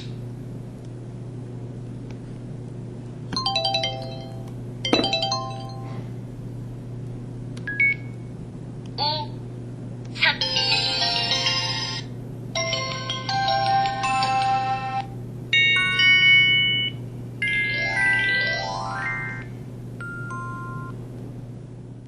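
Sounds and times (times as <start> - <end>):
low steady hum: 0.0 - 22.0
electronic ringtone melodies: 3.5 - 4.4, 12.6 - 15.0, 17.4 - 20.9.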